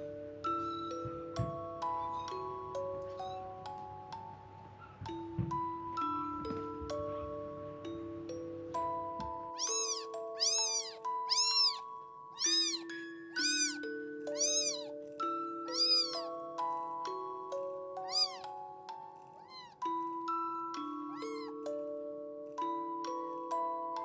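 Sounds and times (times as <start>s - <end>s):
gentle mallet music: 0.0s - 24.0s
kitten meowing: 9.5s - 14.9s, 15.7s - 16.4s, 18.0s - 20.0s, 21.1s - 21.6s.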